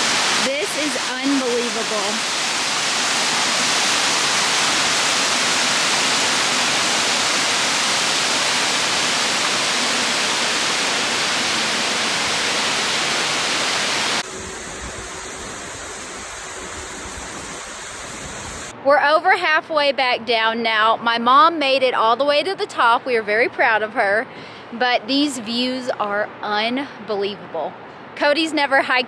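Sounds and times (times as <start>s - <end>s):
steady hiss: 0.0s - 18.7s
waterfall rushing: 0.0s - 18.7s.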